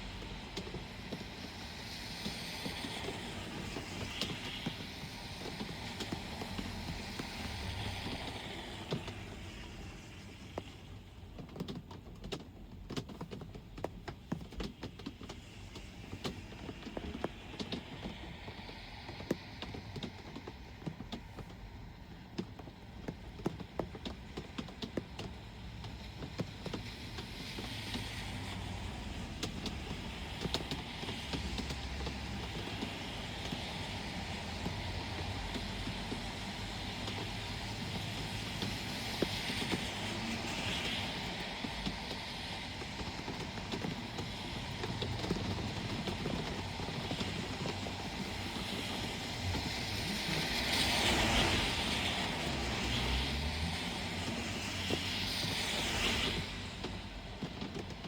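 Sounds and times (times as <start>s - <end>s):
vehicle passing on wet road: 0.0s - 12.4s, 15.0s - 58.0s
rain falling: 0.0s - 58.0s
traffic noise: 0.0s - 58.0s.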